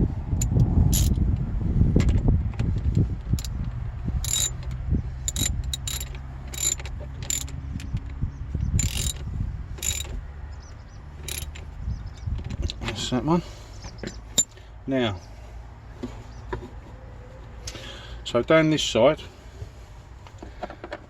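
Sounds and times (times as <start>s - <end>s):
handling noise: 0.0s - 1.4s, 2.0s - 10.2s, 11.2s - 13.1s
ratchet spanner clicking: 0.4s - 1.2s, 3.3s - 3.6s, 4.2s - 8.0s, 8.7s - 10.2s, 11.2s - 11.7s.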